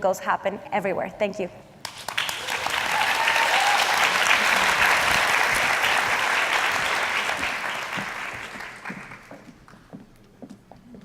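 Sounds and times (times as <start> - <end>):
audience applauding: 1.9 - 9.4.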